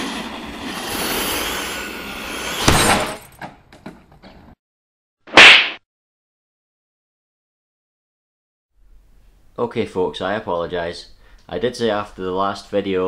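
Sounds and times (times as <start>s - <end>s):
sharp crash: 0.0s - 3.4s, 5.3s - 5.8s.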